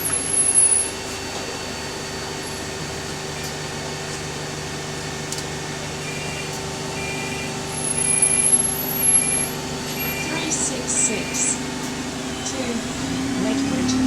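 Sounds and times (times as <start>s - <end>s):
bus engine humming: 0.0s - 14.0s
short electronic beeps: 6.0s - 11.6s.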